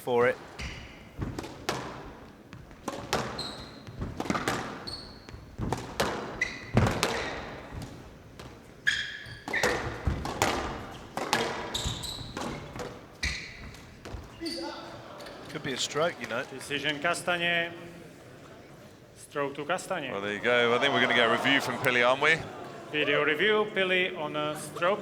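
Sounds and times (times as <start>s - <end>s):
shoes squeaking on wooden floor: 0.0s - 16.9s, 20.2s - 22.5s
squash ball hits: 0.4s - 14.7s.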